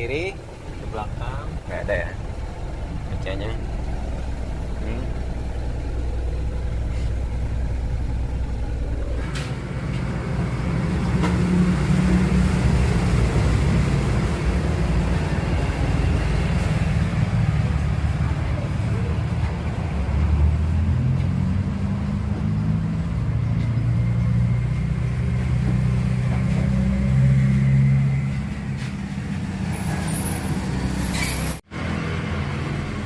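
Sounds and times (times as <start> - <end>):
truck engine idling: 0.0 - 21.0.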